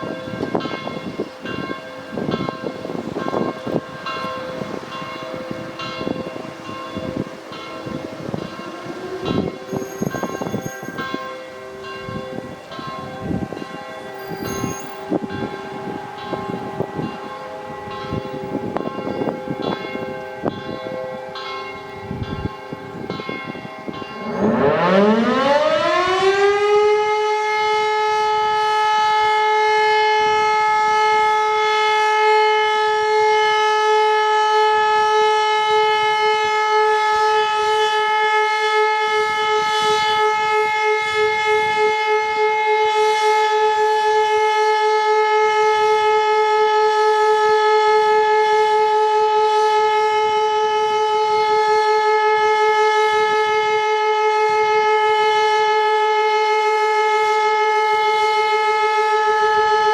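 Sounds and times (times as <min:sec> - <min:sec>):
rotary siren wailing: 0:04.4 - 0:22.1, 0:22.7 - 0:59.9.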